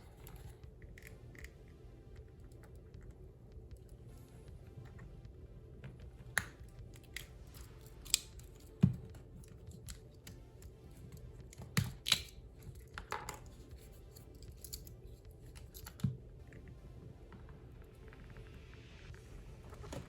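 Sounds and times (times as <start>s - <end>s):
steady low background noise: 0.0s - 20.0s
metallic clicks and snaps: 6.2s - 16.2s.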